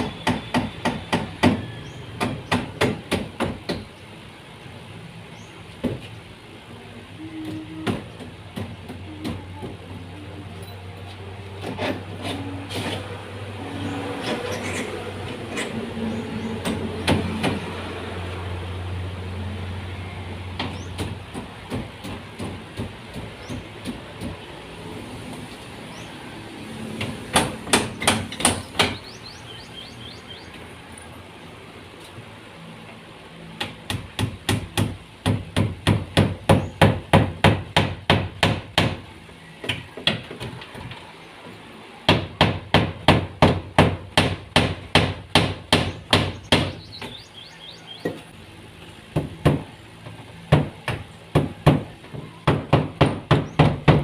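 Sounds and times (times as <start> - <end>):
hammer striking wood: 0.0 - 3.9, 16.6 - 17.7, 20.6 - 24.4, 27.0 - 29.0, 33.6 - 40.8, 42.1 - 47.2, 49.1 - 49.7, 50.5 - 54.0.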